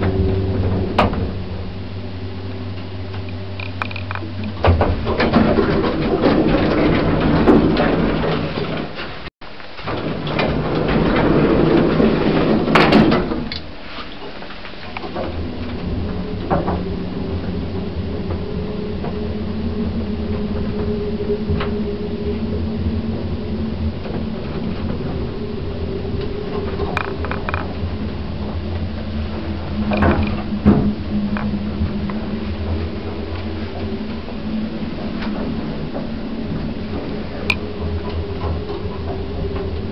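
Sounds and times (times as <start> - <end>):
sharp clicks and knocks: 0.0 - 1.7, 2.8 - 17.6, 26.0 - 39.9
lift car rattling: 0.0 - 39.9
lift motor hum: 0.0 - 39.9.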